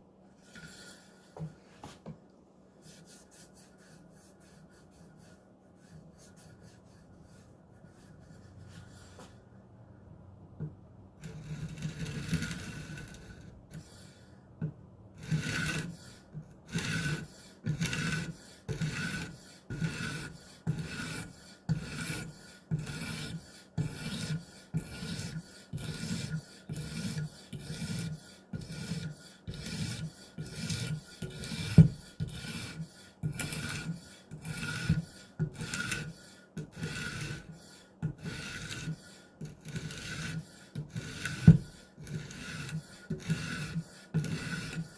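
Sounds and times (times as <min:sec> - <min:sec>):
sharpening stone rasping on knife: 0:11.2 - 0:13.9, 0:15.2 - 0:44.9.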